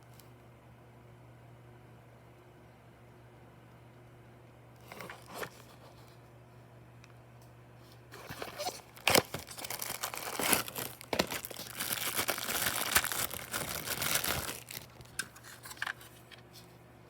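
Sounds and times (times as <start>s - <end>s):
packaging crinkling and tearing: 8.1s - 16.3s.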